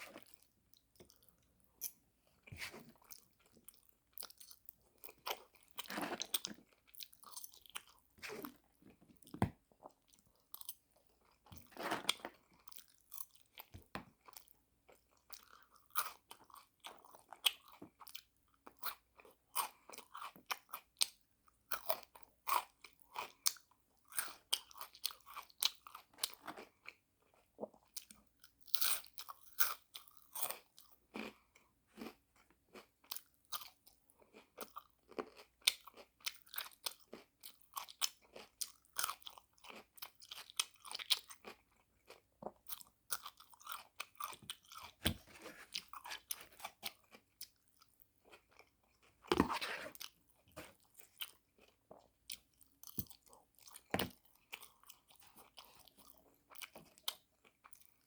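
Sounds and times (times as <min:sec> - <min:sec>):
person chewing crunchy food: 0:00.0 - 0:21.1, 0:21.7 - 0:58.0.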